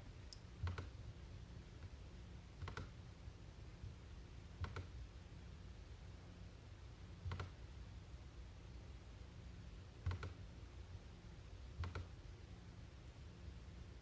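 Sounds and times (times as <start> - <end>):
steady low hum: 0.0 - 14.0
soft clicks: 0.3 - 0.9, 2.6 - 2.9, 4.6 - 4.9, 7.3 - 7.6, 11.8 - 12.1.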